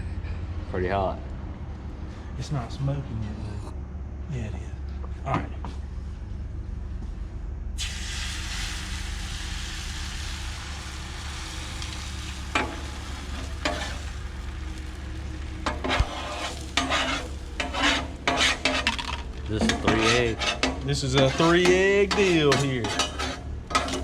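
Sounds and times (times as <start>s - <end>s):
eggs sizzling on a griddle: 7.8s - 24.0s
metal scraping on a griddle: 10.2s - 24.0s.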